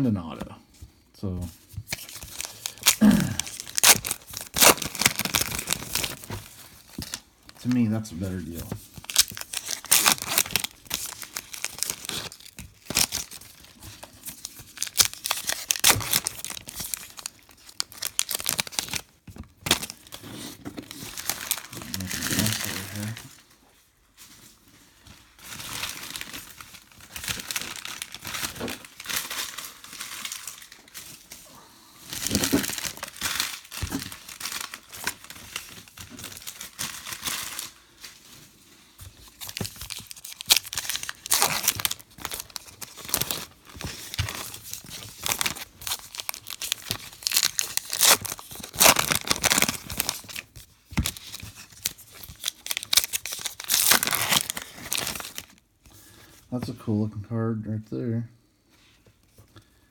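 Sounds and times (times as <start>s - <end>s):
cards rustling: 1.8s - 23.3s, 39.0s - 55.6s
wrappers crinkling and tearing: 1.9s - 23.5s, 24.2s - 56.2s.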